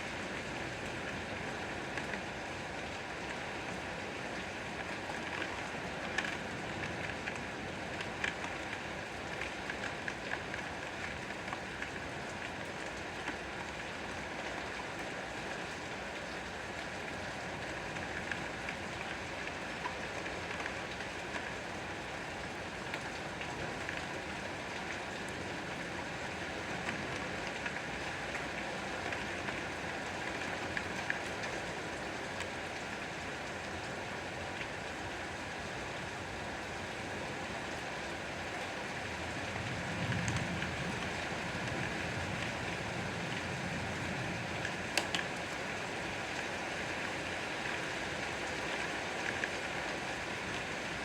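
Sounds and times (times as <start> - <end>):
steady rain falling: 0.0 - 51.0
raindrop taps: 44.9 - 45.3.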